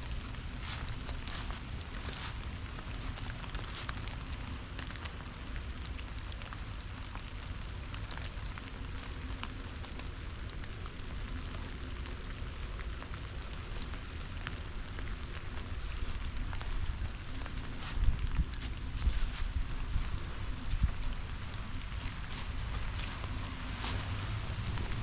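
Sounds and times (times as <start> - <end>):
low rumble: 0.0 - 5.6, 14.4 - 25.0
light rain on leaves: 0.0 - 25.0.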